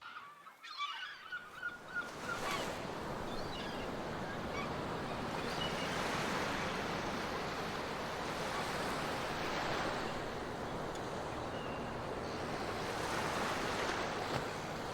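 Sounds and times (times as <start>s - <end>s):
faint seabird calls: 0.0s - 7.7s
sea surf washing: 2.1s - 14.9s.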